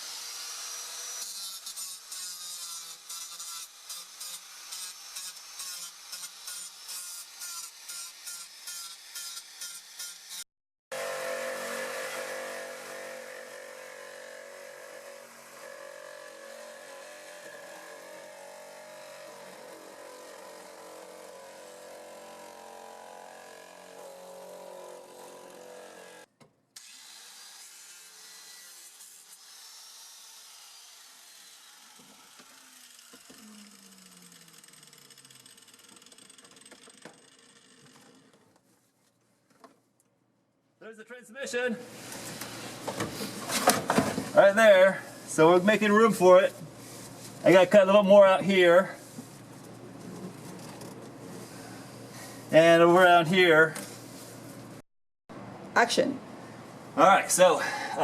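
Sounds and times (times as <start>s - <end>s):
power tool cutting fiberglass: 0.0s - 38.4s.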